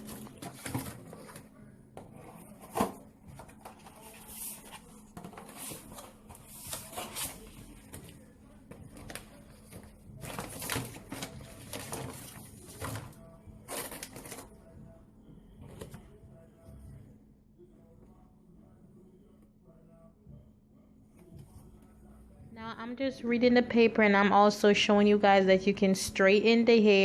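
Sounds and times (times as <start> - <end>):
packaging crinkling and rustling: 8.9 - 13.1.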